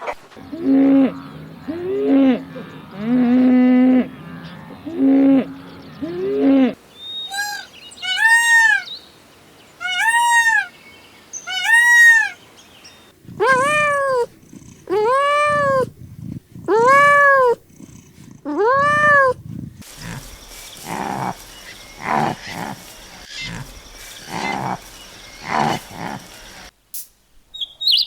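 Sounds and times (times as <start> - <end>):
goat bleating: 7.3 - 8.9, 9.8 - 10.7, 11.5 - 12.4, 13.4 - 15.9, 16.7 - 17.6, 18.5 - 19.4.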